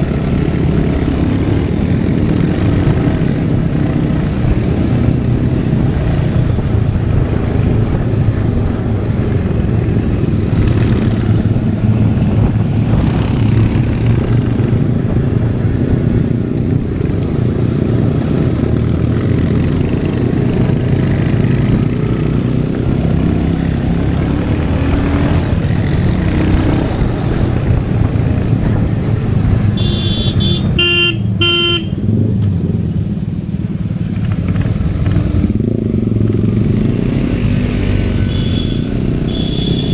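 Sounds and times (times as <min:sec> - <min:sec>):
motorcycle engine running: 0:00.0 - 0:39.9
vehicle horn beeps: 0:29.8 - 0:32.0, 0:38.1 - 0:39.9.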